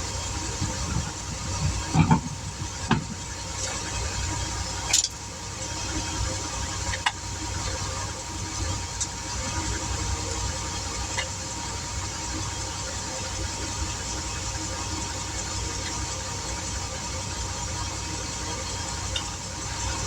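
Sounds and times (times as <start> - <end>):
vehicle engine rumbling: 0.0 - 5.3
metal clicks and knocks: 1.9 - 3.2.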